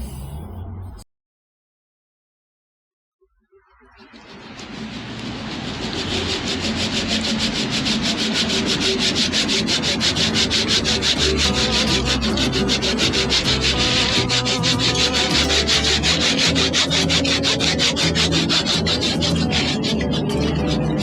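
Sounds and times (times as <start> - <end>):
hand saw cutting timber: 5.7 - 21.0.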